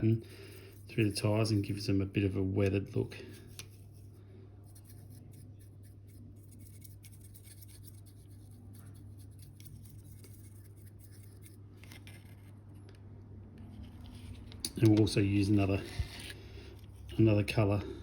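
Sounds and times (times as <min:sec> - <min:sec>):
paintbrush scratching: 0:00.0 - 0:02.0, 0:03.0 - 0:12.8.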